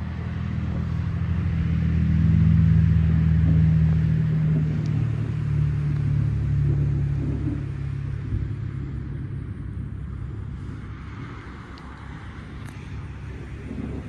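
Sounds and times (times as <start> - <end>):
low vehicle engine hum: 0.0 - 14.0
steady rushing noise: 0.0 - 14.0.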